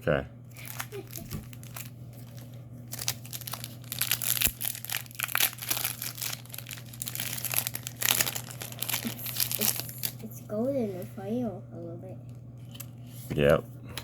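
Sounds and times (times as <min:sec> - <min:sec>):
wrappers crinkling and tearing: 0:00.5 - 0:10.4.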